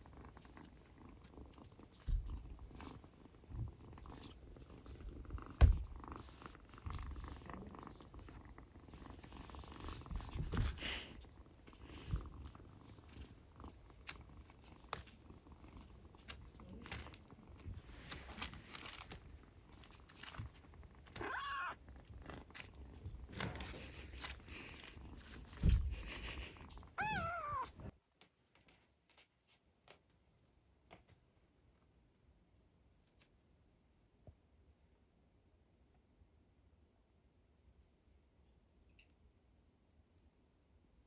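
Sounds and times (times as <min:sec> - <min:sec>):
kitten purring: 0:00.0 - 0:28.0
kitten meowing: 0:21.2 - 0:21.8, 0:27.0 - 0:27.8.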